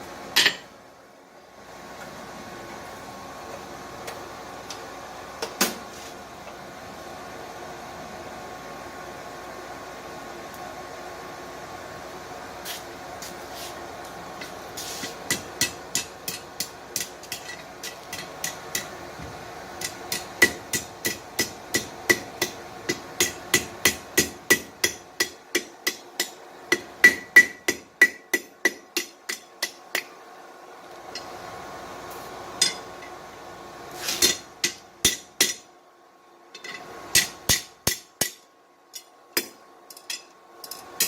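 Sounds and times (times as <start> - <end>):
hammer striking steel on anvil: 15.0 - 18.9, 19.8 - 30.1, 32.6 - 32.9, 34.2 - 35.7, 36.6 - 40.8.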